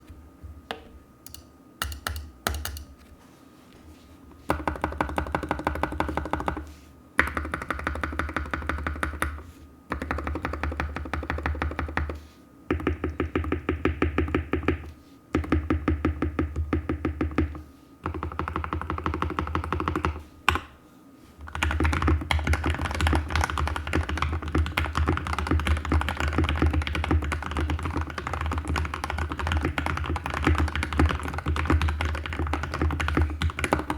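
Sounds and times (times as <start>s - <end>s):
fast mechanical keyboard typing: 7.2s - 9.3s, 9.9s - 14.8s, 15.4s - 20.2s, 21.5s - 33.9s.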